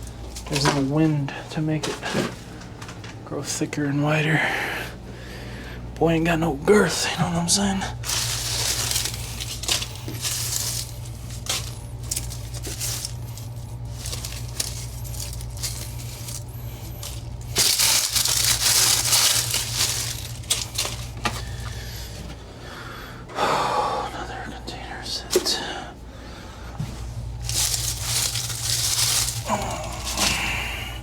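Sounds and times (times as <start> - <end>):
plants and pots rustling: 0.0 - 3.4, 6.0 - 22.4, 26.7 - 31.0
steady low hum: 0.0 - 31.0.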